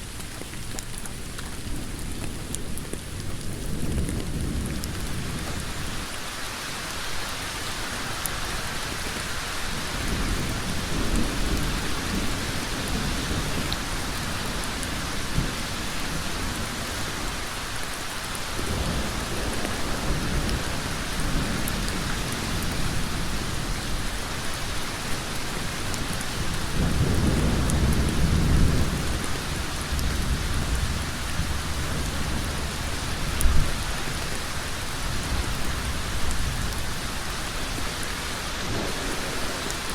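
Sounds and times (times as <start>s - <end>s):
heavy rain on a road: 0.0s - 39.9s.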